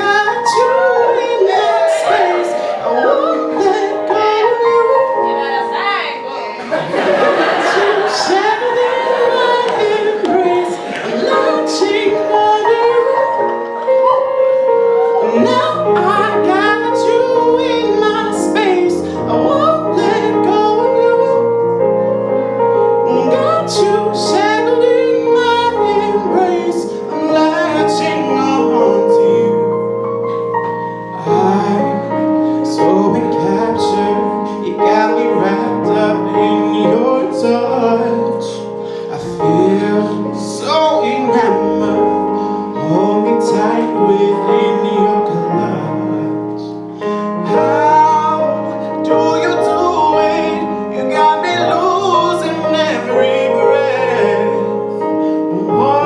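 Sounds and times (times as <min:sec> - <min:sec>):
woman singing: 0:00.1 - 0:06.7.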